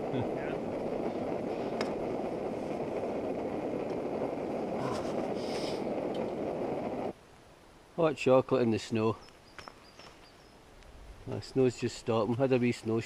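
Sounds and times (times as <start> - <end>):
camping stove burner roaring: 0.0 - 7.2.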